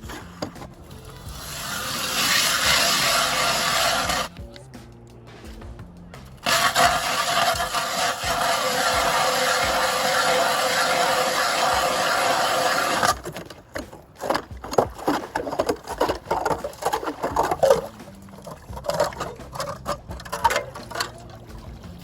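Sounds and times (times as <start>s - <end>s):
ice chips scraping and crunching: 0.0s - 4.3s, 6.4s - 21.1s
ice auger drilling hiss: 1.0s - 4.3s, 6.4s - 13.3s.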